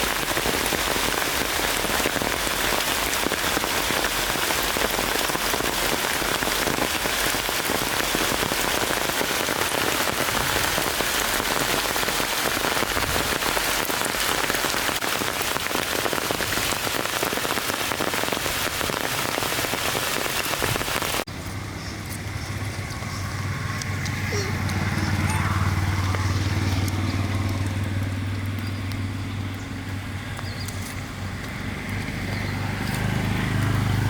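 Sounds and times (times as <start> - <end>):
heavy rain falling: 0.0 - 21.3.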